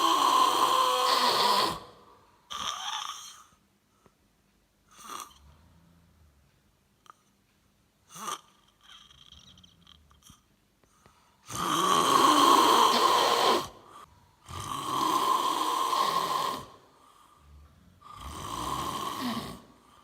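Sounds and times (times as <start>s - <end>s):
man snoring heavily: 0.0s - 3.4s, 11.4s - 20.0s.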